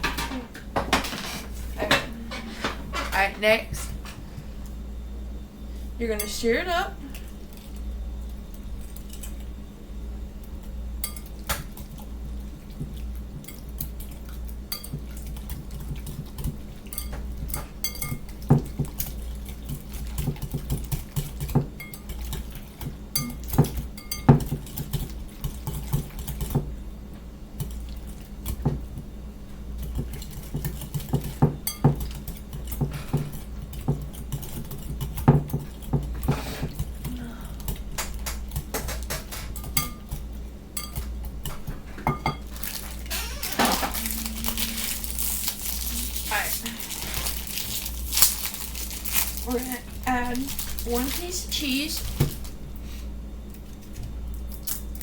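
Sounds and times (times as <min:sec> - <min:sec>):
steady low hum: 0:00.0 - 0:55.0
utensil stirring food in cookware: 0:10.7 - 0:26.8, 0:27.4 - 0:43.1.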